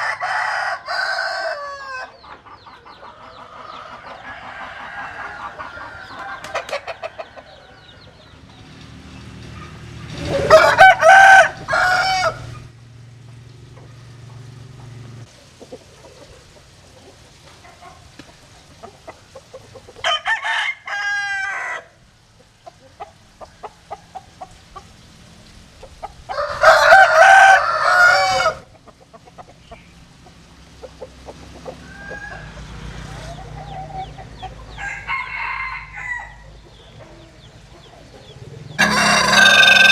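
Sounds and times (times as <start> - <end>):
soft rooster calls: 0.0 - 2.2, 10.3 - 12.6, 26.3 - 28.7, 31.8 - 34.0, 34.7 - 37.3, 38.8 - 39.9
roosters crowing: 0.0 - 12.7, 19.0 - 22.1, 26.1 - 28.8, 31.6 - 37.4, 38.6 - 39.9.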